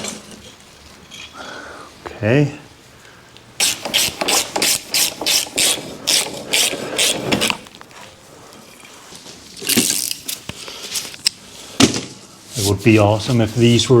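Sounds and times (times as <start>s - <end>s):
ratchet wrench clicking: 3.6s - 7.5s
ratchet rasp: 3.6s - 7.6s.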